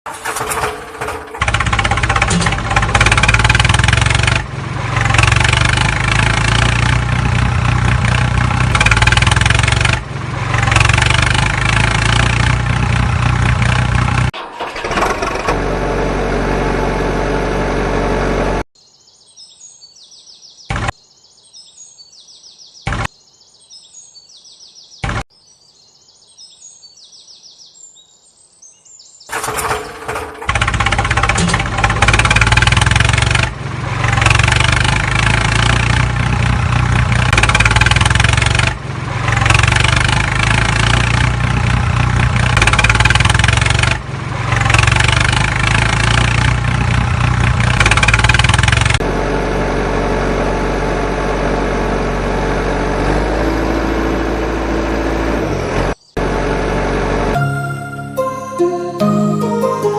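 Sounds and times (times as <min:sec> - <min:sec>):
birds chirping: 0:18.8 - 0:30.0, 0:55.9 - 0:56.2.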